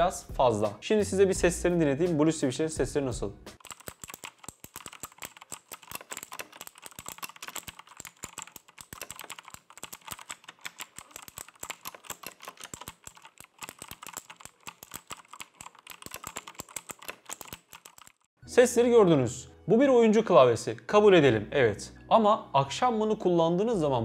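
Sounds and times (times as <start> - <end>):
clicky keyboard typing: 3.6 - 18.3.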